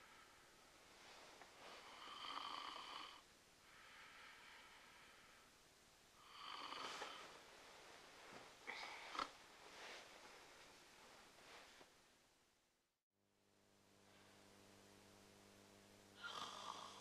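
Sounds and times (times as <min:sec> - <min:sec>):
person snoring: 0:01.8 - 0:05.1, 0:06.2 - 0:07.3, 0:08.6 - 0:09.4, 0:16.2 - 0:17.0.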